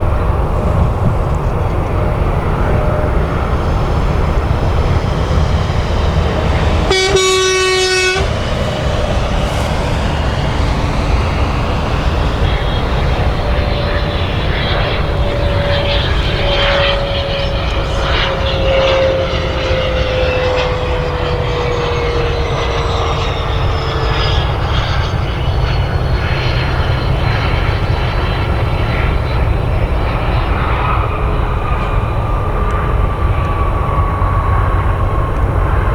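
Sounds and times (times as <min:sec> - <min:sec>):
jet engines rumbling and whining: 0:00.0 - 0:35.9
short horn toot: 0:06.8 - 0:09.9.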